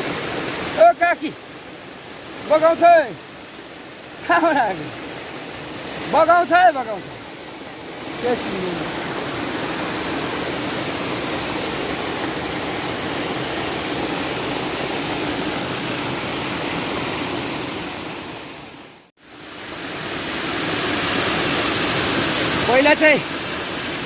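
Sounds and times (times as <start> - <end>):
mountain stream rushing: 0.0 - 24.0.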